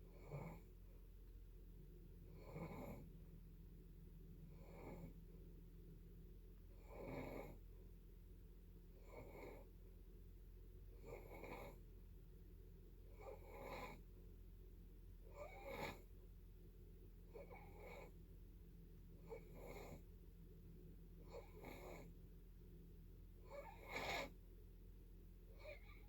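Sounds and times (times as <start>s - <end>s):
faint snoring: 0.0s - 0.8s, 2.2s - 3.2s, 4.5s - 5.3s, 6.7s - 7.7s, 9.0s - 9.8s, 10.9s - 11.9s, 13.0s - 14.1s, 15.2s - 16.2s, 17.3s - 18.2s, 19.2s - 20.1s, 21.2s - 22.2s, 23.4s - 24.4s, 25.5s - 26.0s.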